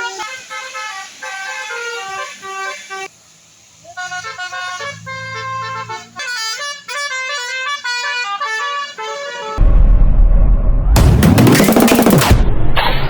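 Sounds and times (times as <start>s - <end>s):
tuned bus horns melody: 4.0s - 9.6s
low hum: 9.6s - 13.0s.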